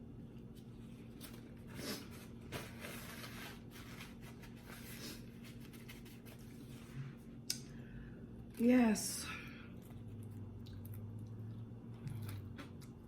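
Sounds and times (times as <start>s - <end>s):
person chewing and smacking: 9.8s - 13.0s.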